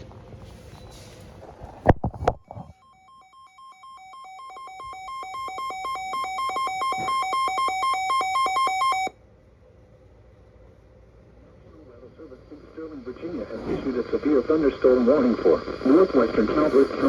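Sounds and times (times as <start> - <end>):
two-pitch alarm beeps: 2.8 - 9.2.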